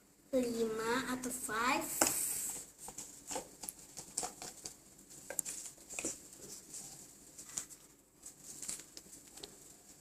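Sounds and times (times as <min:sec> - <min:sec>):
small objects tapping and rustling: 0:02.0 - 0:10.0.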